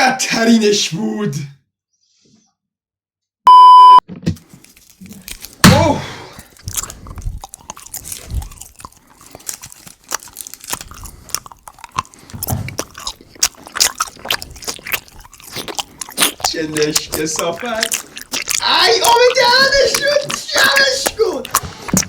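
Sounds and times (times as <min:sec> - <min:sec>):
chewing and crunching food: 0:04.4 - 0:22.0
mouth clicks and smacks: 0:04.4 - 0:22.0.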